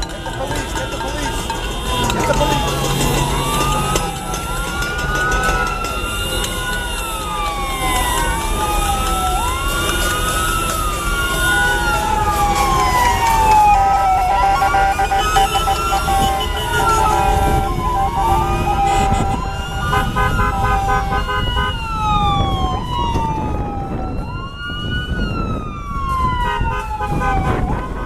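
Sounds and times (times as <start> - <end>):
steady horn tones: 0.0 - 4.3, 13.8 - 21.9
low rumble of street traffic: 0.0 - 28.0
sirens wailing: 0.0 - 28.0.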